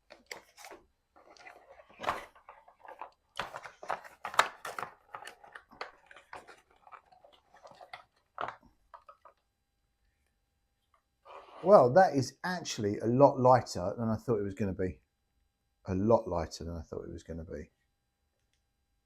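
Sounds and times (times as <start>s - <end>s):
packaging crinkling and rustling: 0.0s - 9.4s.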